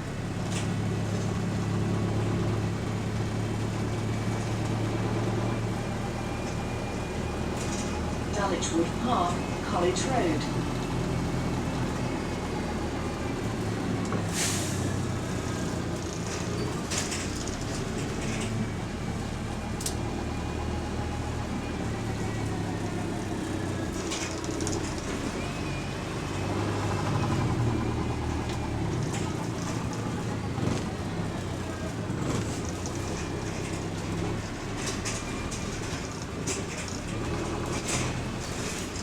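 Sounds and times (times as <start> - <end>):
bus diesel engine running: 0.0 - 39.0
air brakes hissing: 14.2 - 15.0.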